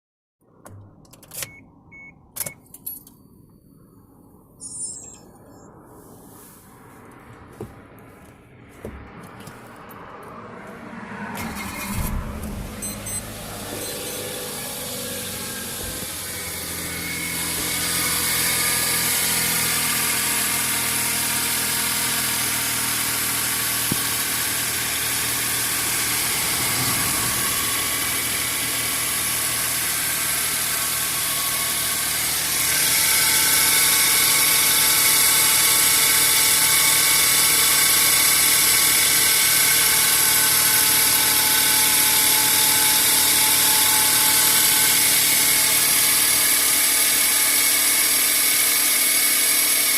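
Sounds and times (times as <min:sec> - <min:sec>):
car engine running: 0:10.6 - 0:49.9
high whine of tensioner pulley: 0:12.7 - 0:49.9.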